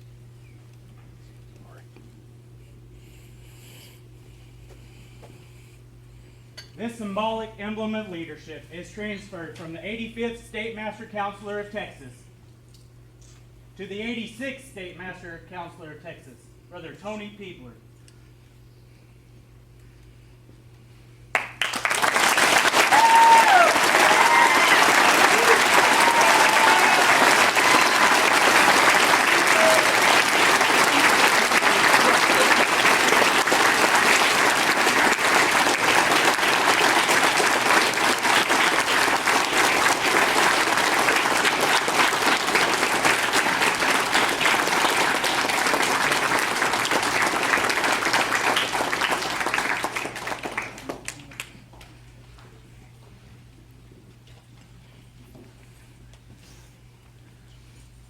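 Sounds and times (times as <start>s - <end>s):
large audience applauding: 21.3s - 51.5s
cheers and whoops: 22.7s - 32.8s.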